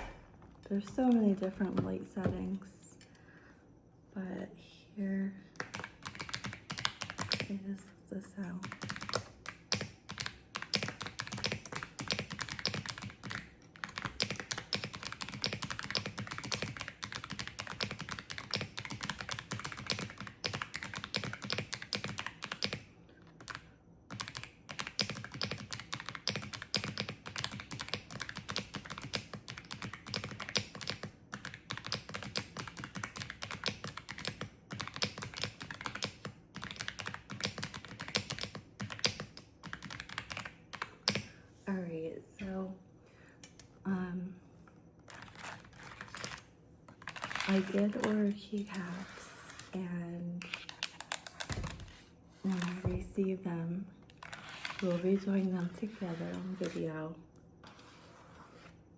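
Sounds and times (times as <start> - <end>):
fast typing on mechanical keyboard: 5.6 - 7.6, 8.6 - 41.3, 45.1 - 49.0, 50.4 - 51.9, 54.1 - 56.8.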